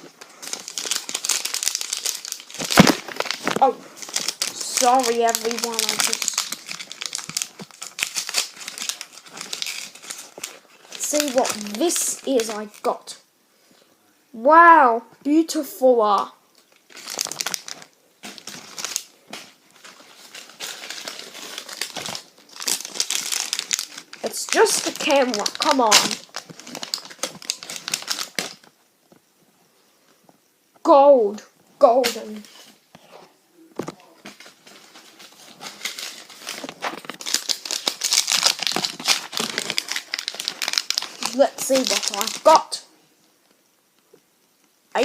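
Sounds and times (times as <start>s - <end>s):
plastic wrapping crinkling: 0.0s - 12.9s, 16.6s - 28.8s, 33.8s - 42.9s.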